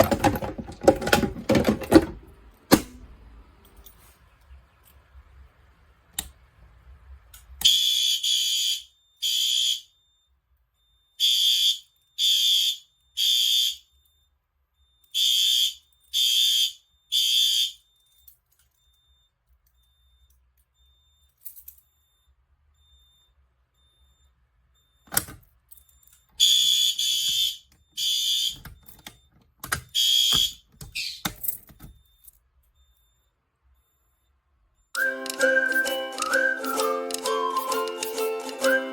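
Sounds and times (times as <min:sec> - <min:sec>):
fire alarm horn beeps: 0:07.6 - 0:17.9, 0:26.4 - 0:29.2, 0:29.9 - 0:31.2, 0:34.9 - 0:38.9.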